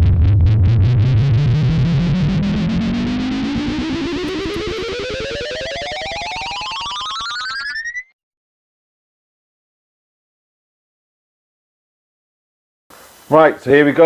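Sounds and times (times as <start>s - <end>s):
distorted tone gliding up: 0.0s - 8.1s.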